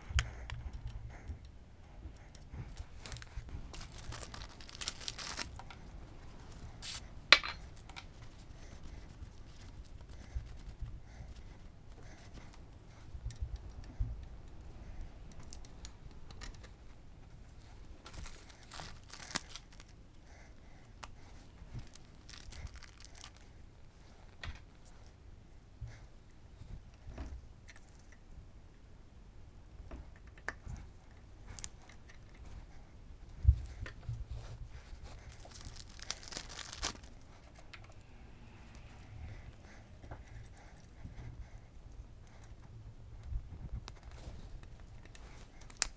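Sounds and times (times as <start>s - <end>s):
rustling and scraping: 2.0s - 12.6s, 15.4s - 20.0s, 21.1s - 23.5s, 31.6s - 41.6s.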